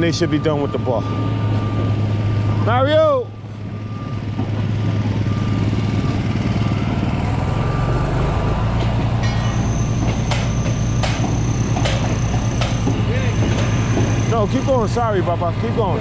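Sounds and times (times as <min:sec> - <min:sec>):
heavy machinery droning: 0:00.0 - 0:16.0
sharp knocks: 0:08.7 - 0:14.3.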